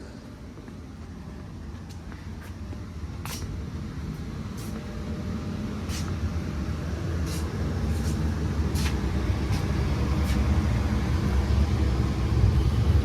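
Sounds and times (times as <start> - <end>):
furnace blower humming: 0.0 - 13.0.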